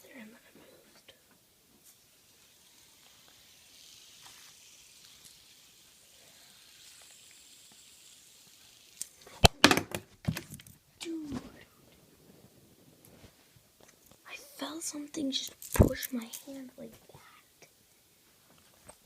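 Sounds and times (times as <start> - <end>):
faint hiss: 0.0 - 9.7, 10.8 - 19.0
camera knocks and clicks: 9.5 - 10.5.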